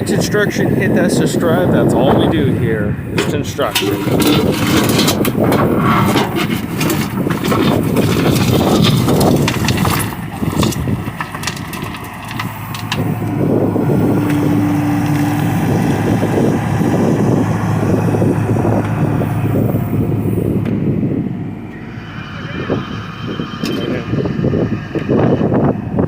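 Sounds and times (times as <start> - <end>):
excavator diesel engine under load: 0.0 - 26.0
knocking and clatter: 3.2 - 16.0
brief high-pitched tone: 21.7 - 24.2.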